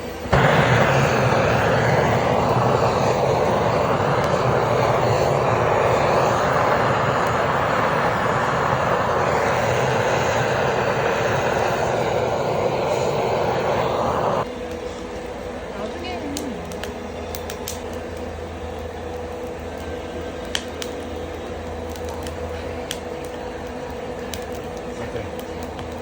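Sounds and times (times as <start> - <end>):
exhaust fan roaring: 0.0 - 26.0.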